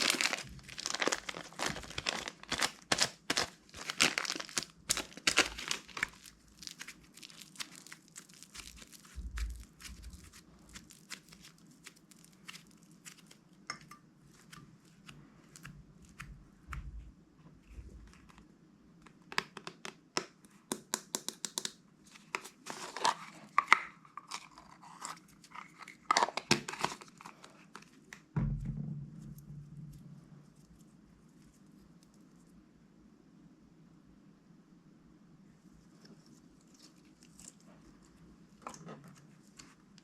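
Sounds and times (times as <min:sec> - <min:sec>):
slime being kneaded: 0:00.0 - 0:18.4
soft low thud: 0:09.2 - 0:10.3, 0:28.4 - 0:30.7.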